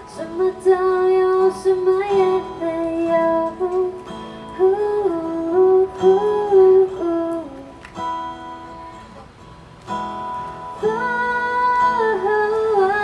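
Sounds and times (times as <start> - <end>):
person singing: 0.0 - 7.8, 10.8 - 13.0
acoustic guitar strumming: 0.0 - 13.0.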